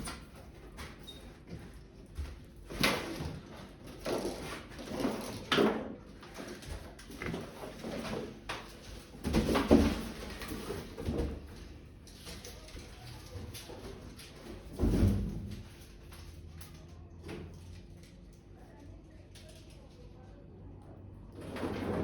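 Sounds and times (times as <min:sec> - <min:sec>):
washing machine scraping and knocking: 0:21.3 - 0:22.0.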